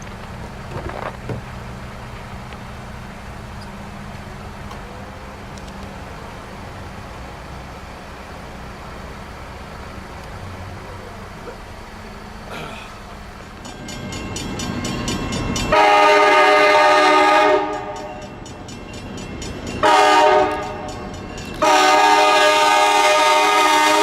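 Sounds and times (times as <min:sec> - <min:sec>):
rumble of approaching train: 0:00.0 - 0:24.0
locomotive air horn: 0:15.7 - 0:18.2, 0:19.8 - 0:20.9, 0:21.6 - 0:24.0.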